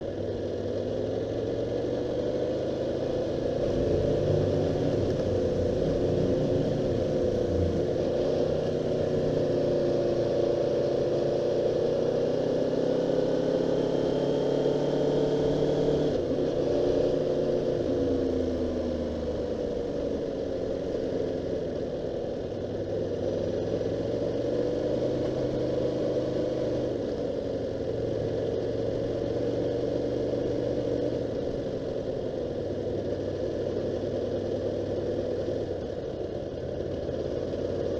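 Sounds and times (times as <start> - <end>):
car engine revving: 1.0 - 21.6.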